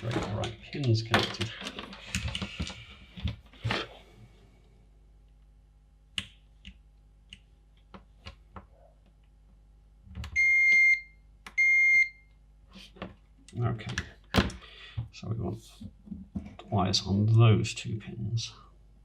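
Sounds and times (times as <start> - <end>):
continuity tester beeping: 10.4 - 12.2.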